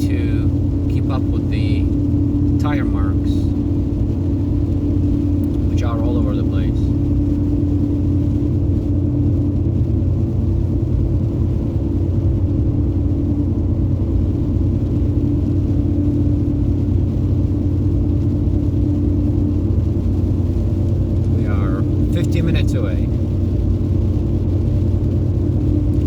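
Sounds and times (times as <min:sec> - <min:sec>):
truck driving rumble in cab: 0:00.0 - 0:26.0.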